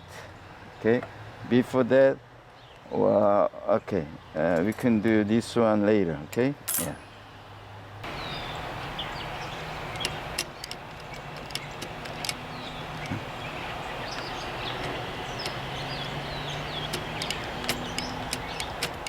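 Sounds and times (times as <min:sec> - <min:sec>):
small metal clicks and taps: 0:09.9 - 0:13.3, 0:14.1 - 0:19.0.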